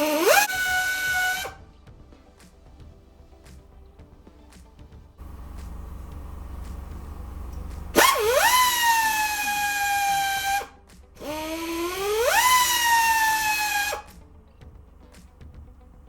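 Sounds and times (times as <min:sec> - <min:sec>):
rotary tool whining: 0:00.0 - 0:01.6, 0:05.2 - 0:16.0.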